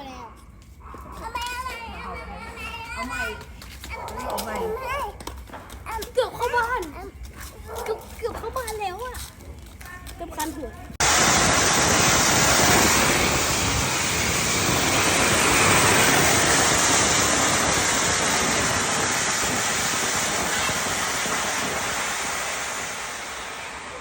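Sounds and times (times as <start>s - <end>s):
fountain firework hissing: 11.0s - 24.0s.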